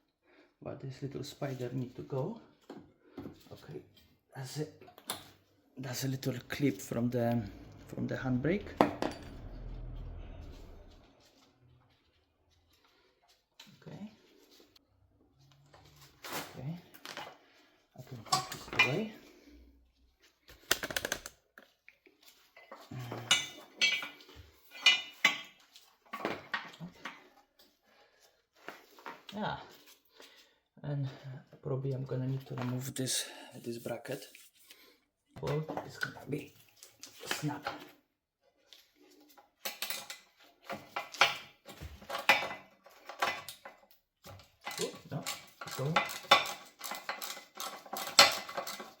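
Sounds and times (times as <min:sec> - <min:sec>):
metal tools clanking on steel: 0:06.5 - 0:10.8, 0:18.0 - 0:19.2, 0:22.6 - 0:27.2
metal tools clinking on metal: 0:18.0 - 0:19.2, 0:22.6 - 0:27.2, 0:44.3 - 0:49.0.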